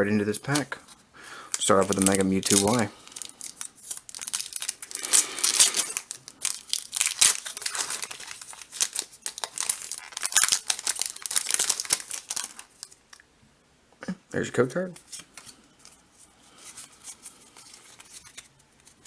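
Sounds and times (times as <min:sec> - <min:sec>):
foil wrapper crinkling: 0:01.5 - 0:13.0.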